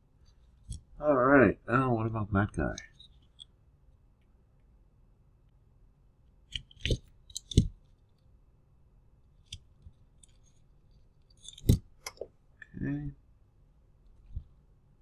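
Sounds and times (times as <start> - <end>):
tools and parts clicking: 6.5 - 7.7, 11.2 - 12.3.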